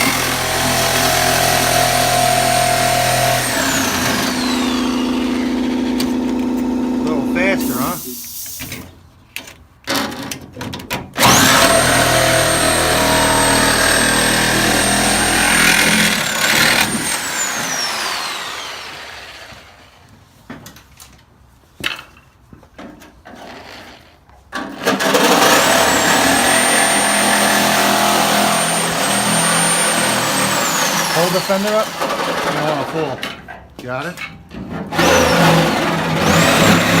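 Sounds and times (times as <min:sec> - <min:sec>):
cutoff tool cutting sheet metal: 0:00.0 - 0:08.0, 0:11.2 - 0:19.2, 0:24.8 - 0:33.1, 0:34.9 - 0:37.0.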